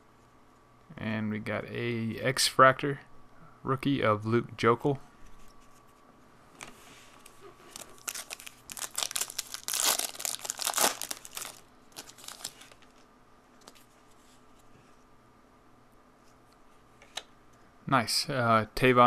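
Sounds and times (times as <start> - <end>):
plastic wrapper tearing and crinkling: 7.7 - 13.0.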